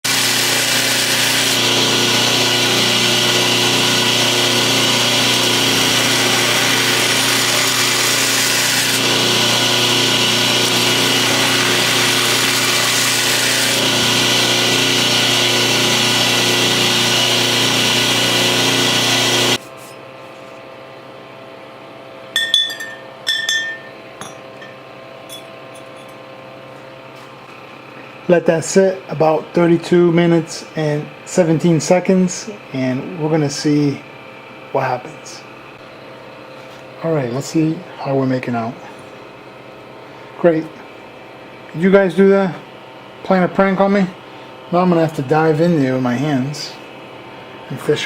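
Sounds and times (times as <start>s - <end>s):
power tool motor running: 0.0s - 20.6s
short ringing clinks: 22.4s - 26.2s.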